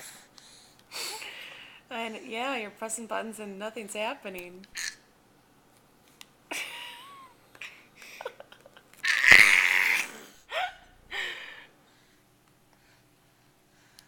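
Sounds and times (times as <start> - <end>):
baby squealing and babbling: 9.0 - 10.2.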